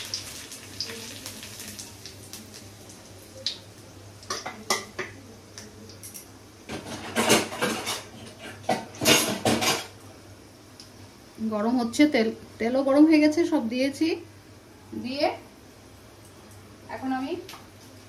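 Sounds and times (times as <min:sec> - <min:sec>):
metal utensils and pots clattering: 0:06.7 - 0:10.0.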